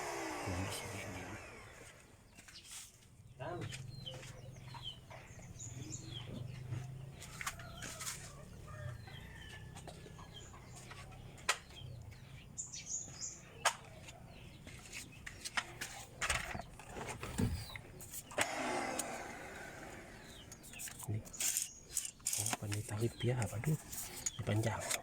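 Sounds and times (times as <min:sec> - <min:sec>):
bird chirps: 0:01.6 - 0:15.4, 0:16.5 - 0:18.4, 0:20.1 - 0:24.8.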